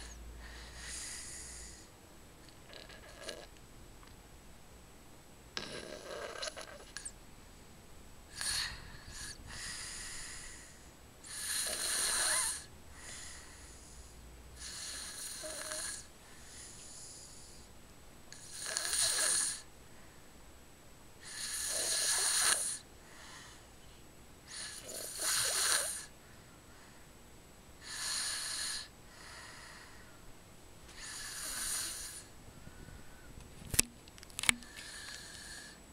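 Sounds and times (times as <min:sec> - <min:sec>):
breathy snores: 0:00.0 - 0:01.9, 0:02.6 - 0:03.5, 0:05.6 - 0:07.1, 0:08.3 - 0:17.7, 0:18.3 - 0:19.7, 0:21.2 - 0:23.6, 0:24.5 - 0:26.1, 0:27.8 - 0:30.0, 0:30.9 - 0:32.3, 0:34.6 - 0:35.8.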